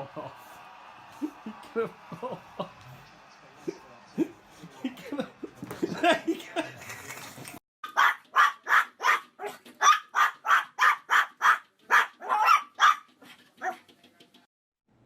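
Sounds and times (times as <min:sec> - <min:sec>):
dog barking: 0:07.8 - 0:13.8.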